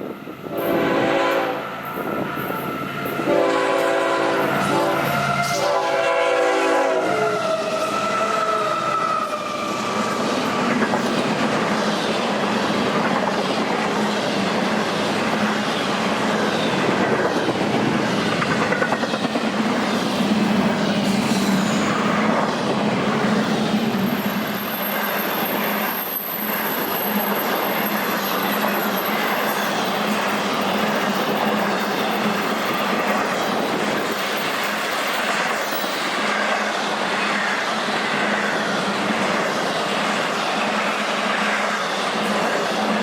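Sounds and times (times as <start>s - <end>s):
train wheels rumbling on rails: 0.0s - 43.0s
high wheel squeal: 23.8s - 30.0s.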